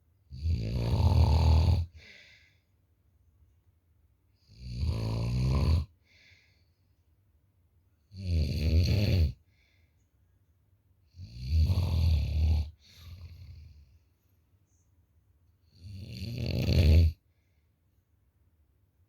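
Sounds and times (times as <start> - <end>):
heavy snoring: 0.3 - 2.1, 4.5 - 5.9, 8.2 - 9.4, 11.2 - 13.7, 15.8 - 17.2
faint breath: 1.9 - 2.8, 6.0 - 7.1, 9.4 - 10.2, 12.8 - 15.0, 17.2 - 17.9.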